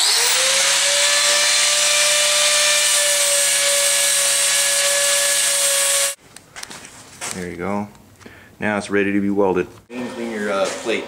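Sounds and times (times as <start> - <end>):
power grinder grinding metal: 0.0 - 6.2.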